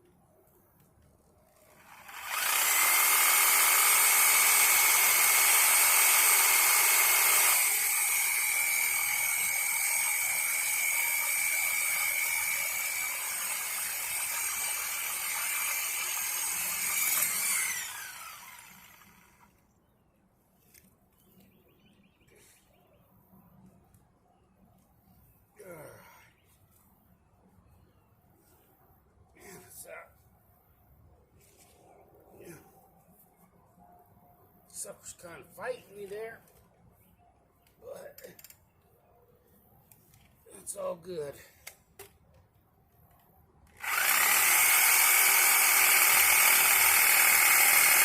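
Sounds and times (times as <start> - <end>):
electric saw cutting wood: 1.6 - 19.6, 43.7 - 48.0.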